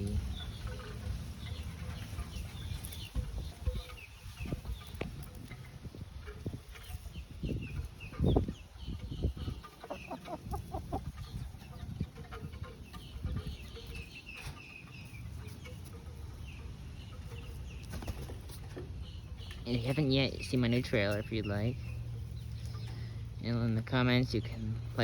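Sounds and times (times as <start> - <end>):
chickens clucking: 0.0 - 25.0
chicks peeping: 0.0 - 25.0.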